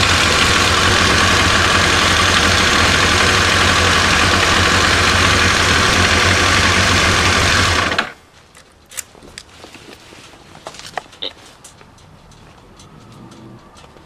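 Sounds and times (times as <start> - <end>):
motorcycle engine idling: 0.0 - 8.2
faint clicks: 11.0 - 14.0.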